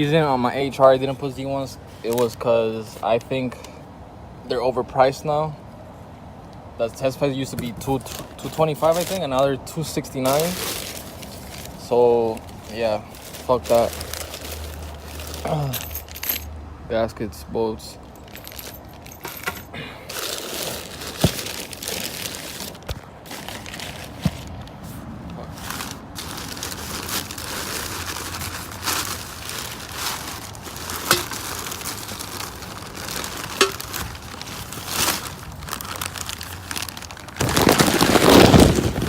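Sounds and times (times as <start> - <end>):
plastic packaging crinkling: 7.7 - 9.4, 10.2 - 16.3, 20.1 - 24.9, 25.5 - 39.0.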